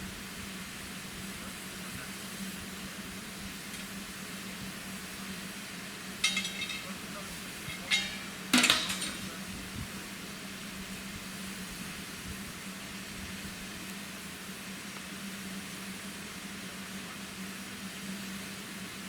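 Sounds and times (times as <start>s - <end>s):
sharp metallic clank: 6.2s - 7.0s, 7.6s - 9.4s.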